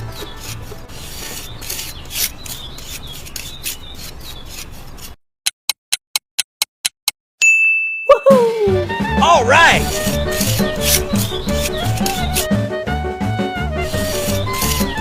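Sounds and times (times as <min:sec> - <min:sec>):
scraping and rubbing: 0:00.0 - 0:05.2, 0:09.8 - 0:12.5, 0:13.8 - 0:15.0.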